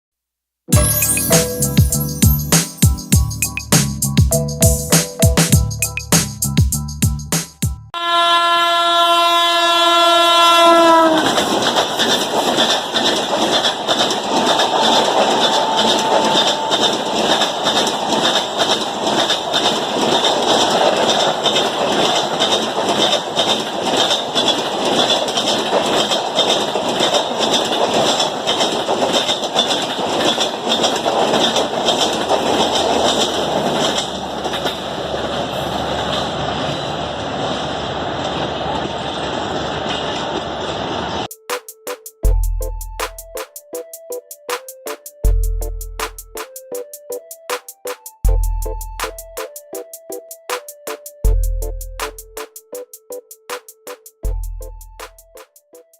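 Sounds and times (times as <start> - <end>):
train horn blast: 0.7 - 1.3, 8.0 - 11.4, 14.6 - 17.5
train wheels clattering over rail joints: 10.7 - 42.1.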